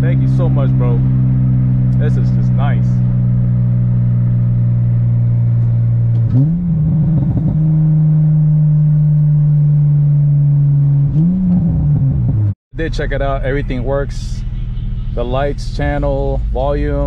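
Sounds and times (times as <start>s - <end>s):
car engine running and revving: 0.0s - 12.6s.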